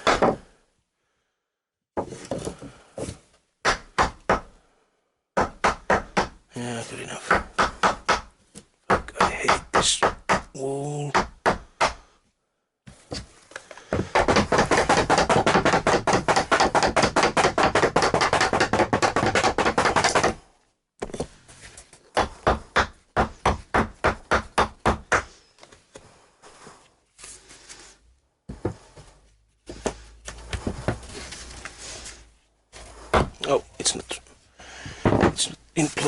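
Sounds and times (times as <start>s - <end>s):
hammering on floor panel: 13.9s - 20.4s.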